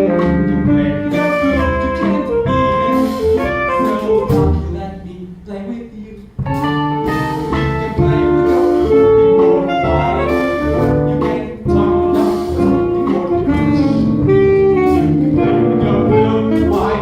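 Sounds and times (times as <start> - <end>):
saxophone and brass tune: 0.0 - 4.7, 6.5 - 17.0
band playing jazz: 0.0 - 17.0.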